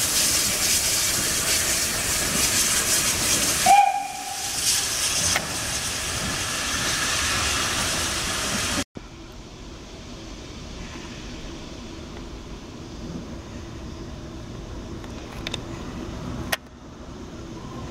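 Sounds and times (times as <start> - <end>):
steam locomotive hissing: 0.0 - 8.8
steam whistle blast: 3.6 - 4.8.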